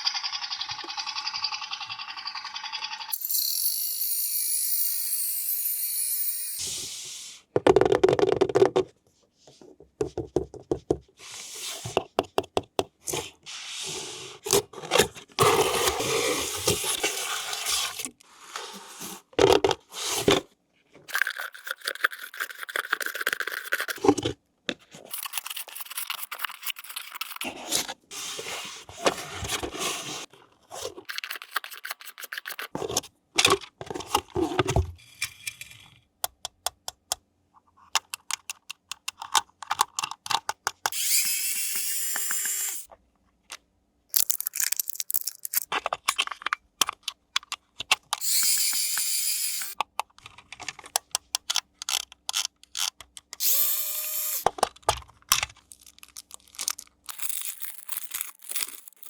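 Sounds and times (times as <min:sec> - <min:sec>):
packaging scraping and tearing: 0:55.6 - 0:59.0.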